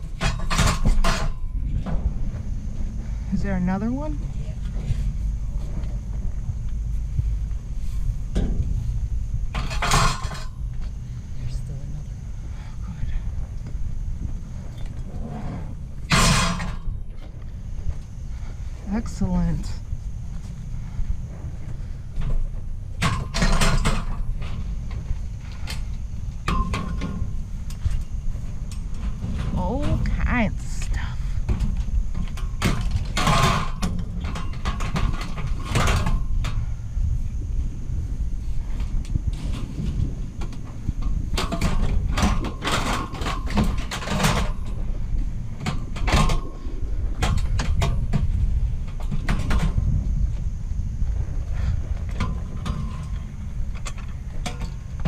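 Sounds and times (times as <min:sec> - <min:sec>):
scrap metal clanking: 0:00.0 - 0:02.1, 0:09.5 - 0:10.6, 0:15.0 - 0:17.0, 0:32.6 - 0:36.6
steady low rumble: 0:00.0 - 0:55.0.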